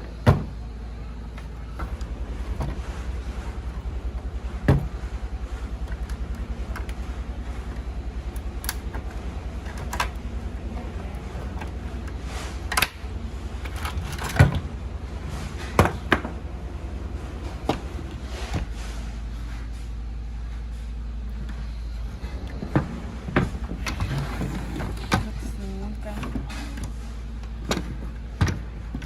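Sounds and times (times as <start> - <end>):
pulsing low hum: 0.0 - 29.0
sharp clicks and knocks: 5.6 - 10.5.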